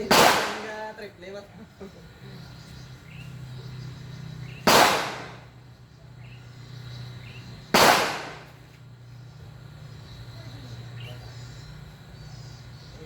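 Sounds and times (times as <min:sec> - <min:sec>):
gunshots: 0:00.0 - 0:01.0, 0:04.6 - 0:05.5, 0:07.7 - 0:08.6.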